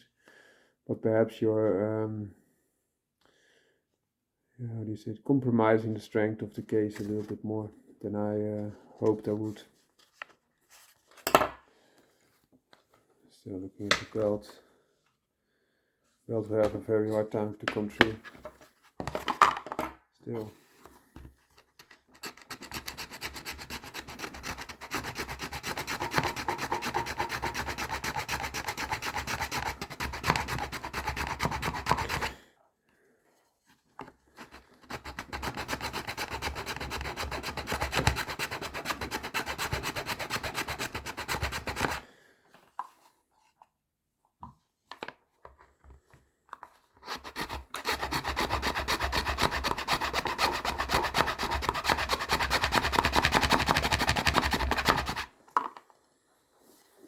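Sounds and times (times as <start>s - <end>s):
hand file rasping plastic: 21.8s - 32.4s, 34.0s - 42.1s, 47.0s - 55.4s.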